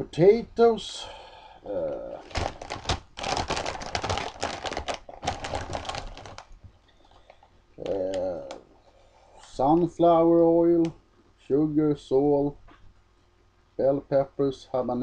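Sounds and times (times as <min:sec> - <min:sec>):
foil chip bag crinkling: 0:02.2 - 0:08.6.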